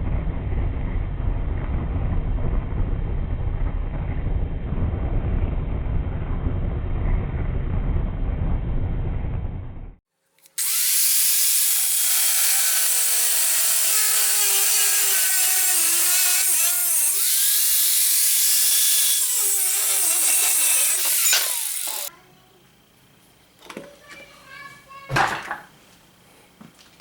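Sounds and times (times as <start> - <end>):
electric grinder on metal: 10.4 - 22.1.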